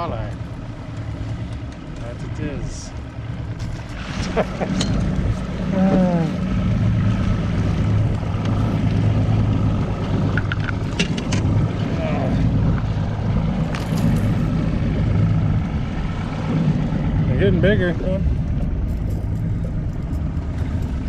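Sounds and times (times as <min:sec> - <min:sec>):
outboard motor humming: 0:00.0 - 0:21.0
sharp clicks and knocks: 0:10.3 - 0:11.5.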